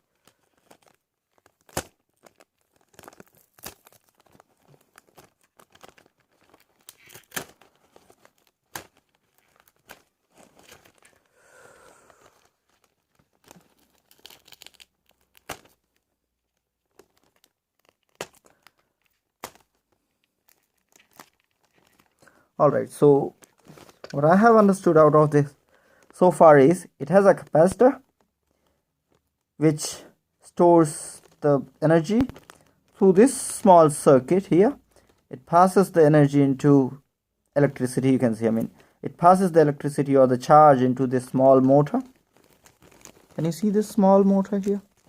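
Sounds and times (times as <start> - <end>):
foam and plastic parts crackling: 0.0 - 26.2, 30.8 - 33.7, 41.0 - 45.0.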